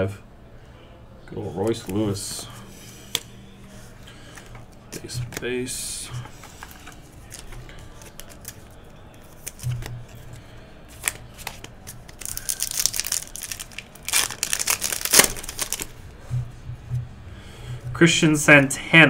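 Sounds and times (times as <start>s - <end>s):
cards being handled: 1.6s - 16.0s
wrapper crinkling and tearing: 6.8s - 10.2s, 10.9s - 16.0s.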